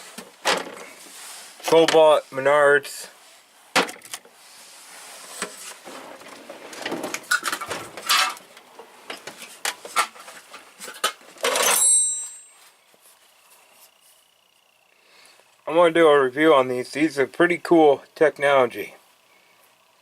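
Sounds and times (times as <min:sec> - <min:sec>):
metallic scraping rattle: 0:07.2 - 0:08.4.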